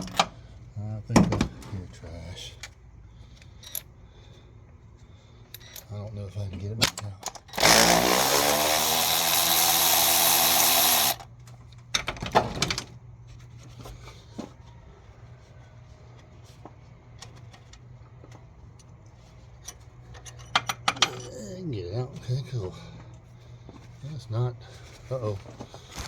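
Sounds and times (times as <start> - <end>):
power drill spinning bolt: 7.4 - 11.2.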